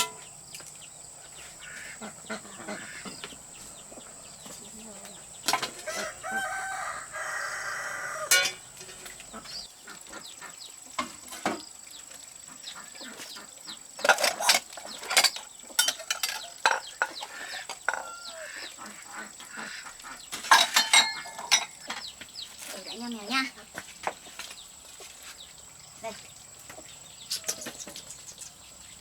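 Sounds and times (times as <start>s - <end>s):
rooster crowing: 5.7s - 8.7s, 17.9s - 18.7s.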